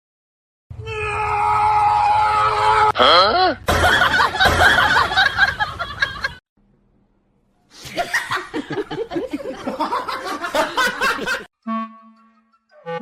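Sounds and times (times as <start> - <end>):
people laughing: 3.7 - 6.4, 7.8 - 11.5.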